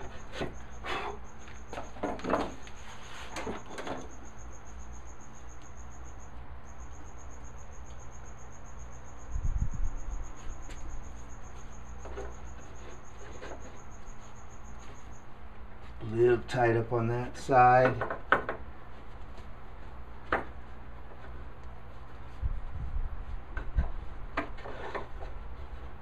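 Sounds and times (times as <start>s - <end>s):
hand tool scraping on wood: 0.0s - 3.9s, 12.0s - 15.1s, 23.6s - 26.0s.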